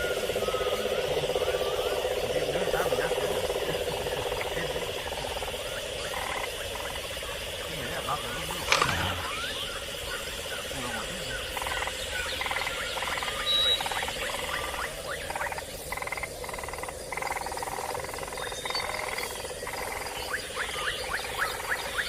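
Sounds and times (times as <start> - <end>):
steady high drone: 0.0 - 15.2
frogs calling in a chorus: 0.0 - 22.0.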